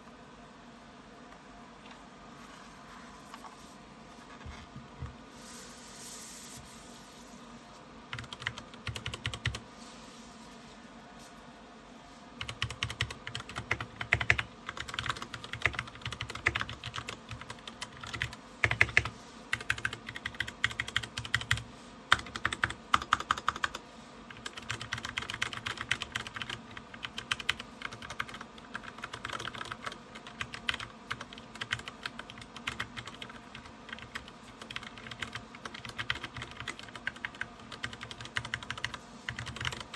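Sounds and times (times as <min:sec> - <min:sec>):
mechanical keyboard typing: 0:08.1 - 0:09.6, 0:12.4 - 0:39.9.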